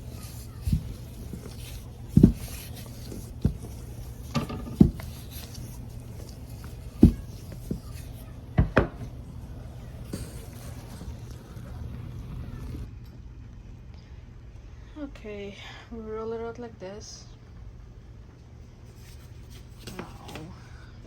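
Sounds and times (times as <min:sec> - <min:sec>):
rolling pin knocking on board: 0:00.0 - 0:12.3.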